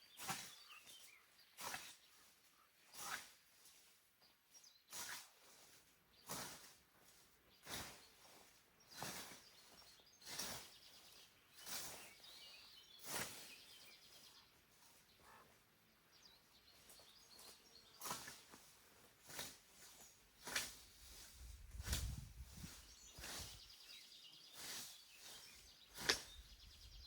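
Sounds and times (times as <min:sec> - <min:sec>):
scythe swishing through grass: 0:00.1 - 0:03.9, 0:04.9 - 0:13.7, 0:18.0 - 0:26.5.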